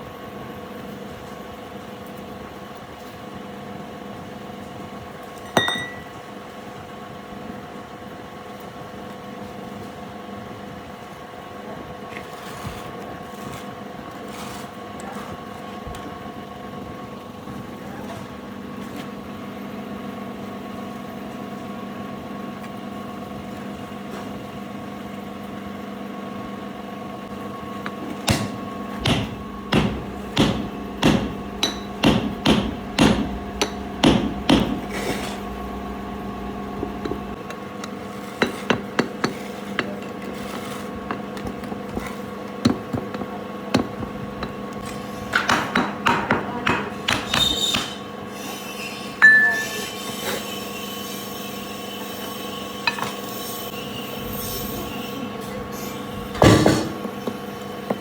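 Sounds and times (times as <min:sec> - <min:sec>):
steady machine hum: 0:05.4 - 0:06.6, 0:25.4 - 0:46.1
hammer striking metal: 0:05.6 - 0:06.2, 0:28.3 - 0:37.4.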